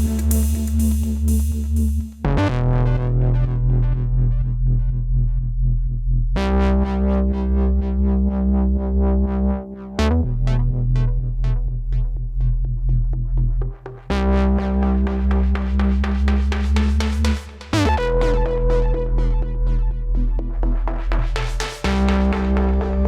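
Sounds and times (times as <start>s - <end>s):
synthesizer chords: 0.0s - 5.3s, 6.4s - 23.0s
heavy bass line: 0.0s - 23.0s
arpeggiated synth pattern: 14.1s - 23.0s.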